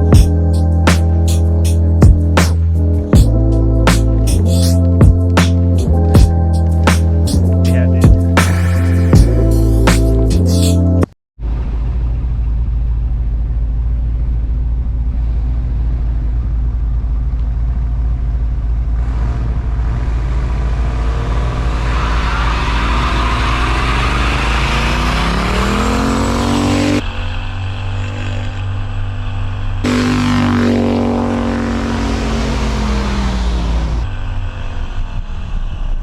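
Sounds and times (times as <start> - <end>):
vehicle engine revving: 11.4 - 36.0.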